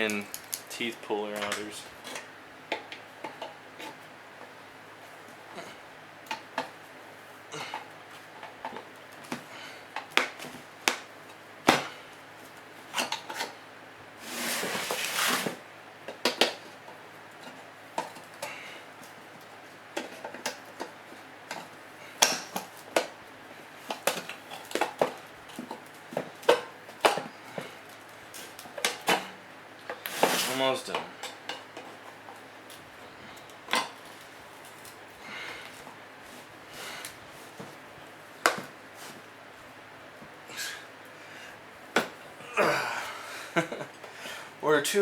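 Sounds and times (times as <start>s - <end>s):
metal tearing scrape: 14.2s - 15.6s, 30.0s - 30.7s.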